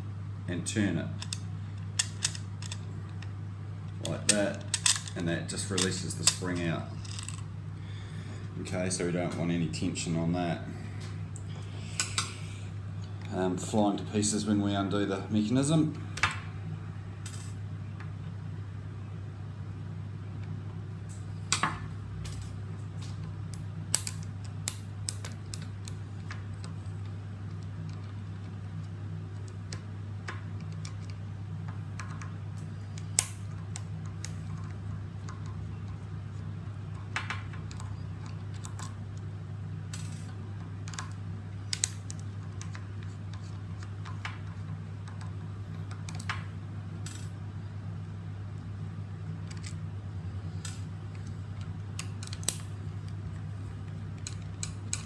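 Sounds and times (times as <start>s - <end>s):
steady low hum: 0.0s - 55.0s
small parts being handled: 1.2s - 7.5s.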